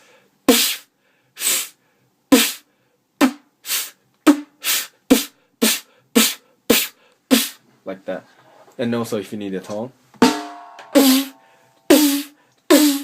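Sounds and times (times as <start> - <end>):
beatboxed vocal snare: 0.5 - 7.6, 11.9 - 13.0.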